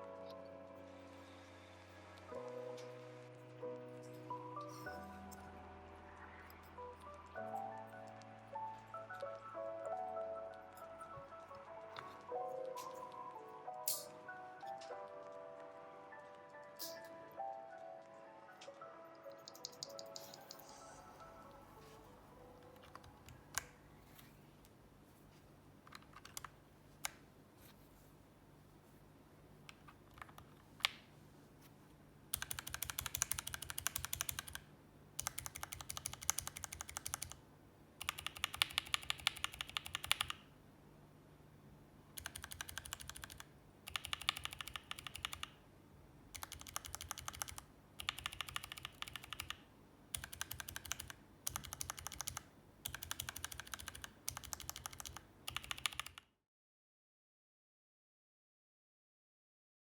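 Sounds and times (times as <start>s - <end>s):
typing on mechanical keyboard: 19.3s - 20.7s, 25.9s - 27.2s, 32.3s - 37.4s, 38.0s - 40.4s, 42.2s - 45.6s, 46.3s - 56.3s.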